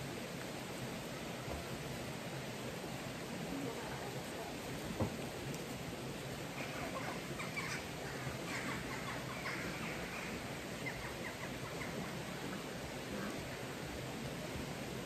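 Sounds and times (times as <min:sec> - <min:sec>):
background hiss: 0:00.0 - 0:15.0
birds calling: 0:06.5 - 0:13.6.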